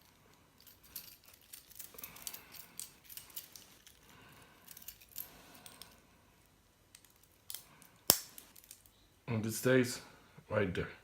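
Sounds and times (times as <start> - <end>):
metal links clinking: 0.0 - 6.0, 6.9 - 8.9.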